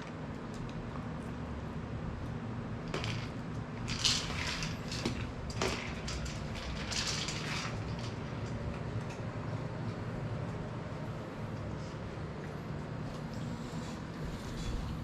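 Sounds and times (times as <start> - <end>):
steady low hum: 0.0 - 15.0
plastic clatters and scrapes: 2.9 - 9.2.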